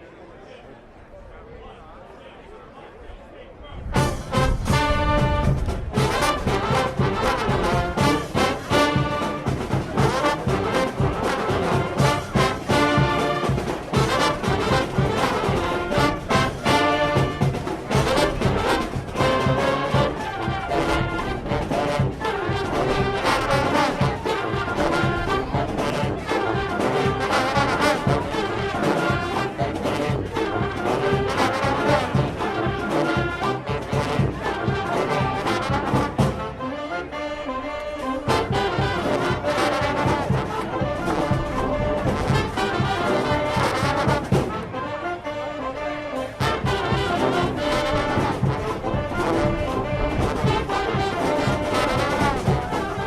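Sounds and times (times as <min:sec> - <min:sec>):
brass band playing: 0:03.8 - 0:53.0
steady percussion beat: 0:04.0 - 0:36.5, 0:46.4 - 0:53.0.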